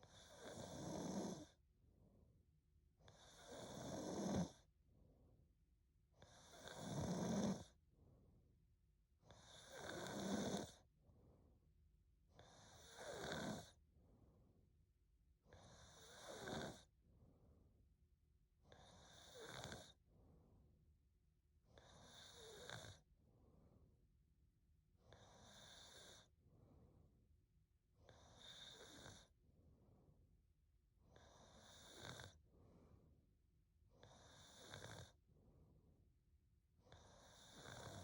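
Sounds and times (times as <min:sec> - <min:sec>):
woman snoring: 0:00.2 - 0:01.6, 0:03.2 - 0:04.6, 0:06.2 - 0:07.7, 0:09.3 - 0:10.8, 0:12.4 - 0:13.8, 0:15.8 - 0:16.8, 0:21.8 - 0:23.0.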